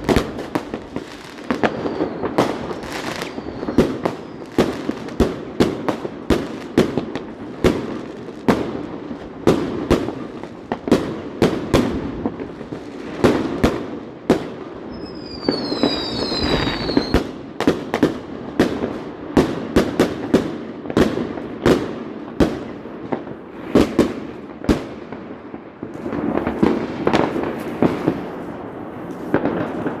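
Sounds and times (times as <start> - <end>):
fireworks whistling: 0.0 - 5.8, 14.4 - 18.0
fireworks bangs: 0.0 - 30.0
fireworks crackling: 0.0 - 30.0.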